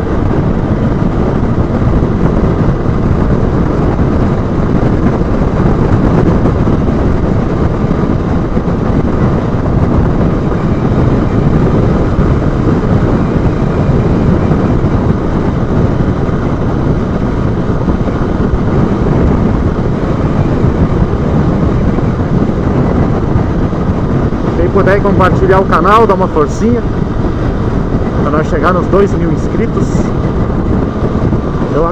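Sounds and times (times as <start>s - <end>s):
motorcycle engine: 0.0s - 31.9s
wind and road noise: 0.0s - 31.9s.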